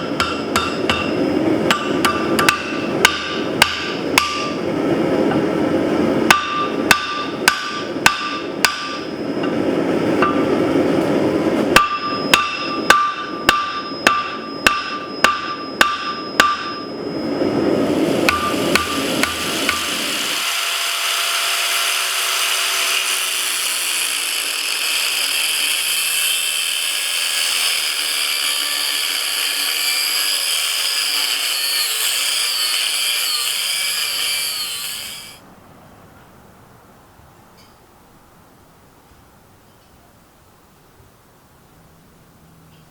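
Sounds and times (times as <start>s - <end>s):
hammer striking steel on anvil: 0.0s - 4.6s, 6.3s - 9.6s, 10.2s - 10.6s, 11.8s - 20.4s
high-pitched hiss: 17.0s - 20.4s.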